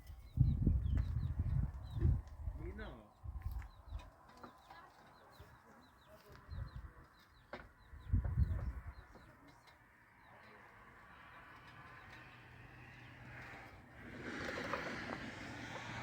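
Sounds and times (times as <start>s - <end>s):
small birds chirping: 0.0s - 16.0s
low rumbling thuds: 8.0s - 8.9s.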